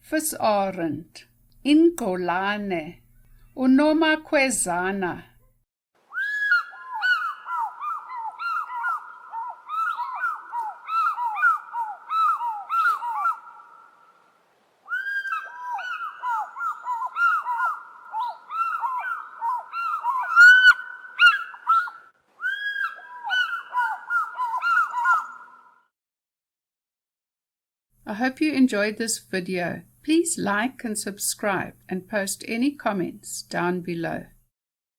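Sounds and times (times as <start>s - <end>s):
eagles calling in duet: 6.1s - 14.2s, 14.8s - 25.8s.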